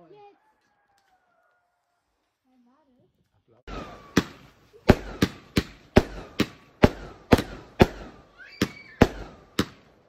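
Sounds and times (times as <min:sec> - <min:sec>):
fireworks banging: 0:03.7 - 0:10.0
firework whistle: 0:08.4 - 0:09.4.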